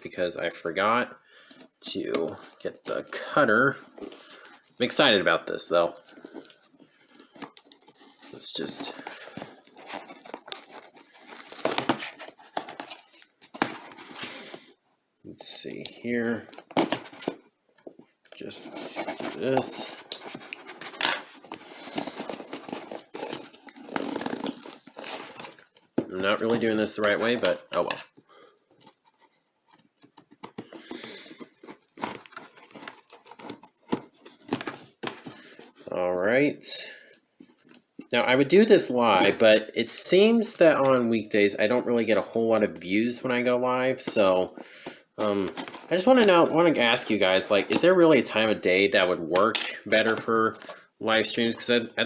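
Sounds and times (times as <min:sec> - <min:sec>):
packaging crinkling: 0:01.4 - 0:14.6, 0:18.4 - 0:35.9.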